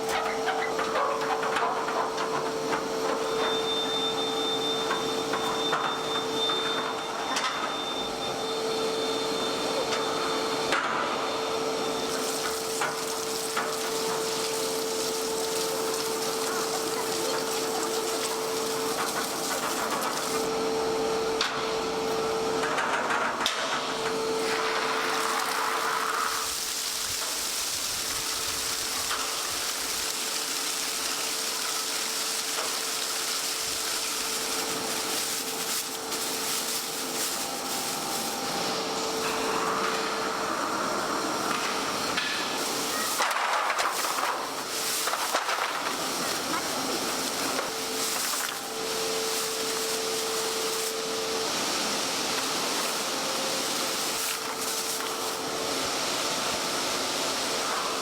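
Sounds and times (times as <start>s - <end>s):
meat processing machine humming: 0.0s - 58.0s.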